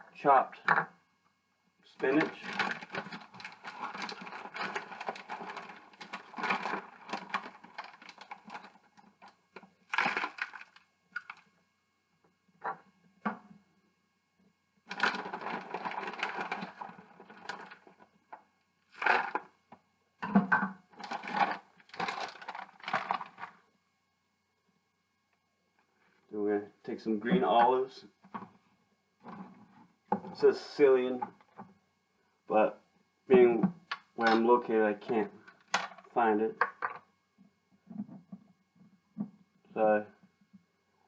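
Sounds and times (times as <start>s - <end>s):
crackling crunching rustle of spinach: 2.0s - 11.4s, 14.9s - 18.0s, 18.9s - 19.5s, 21.0s - 23.6s.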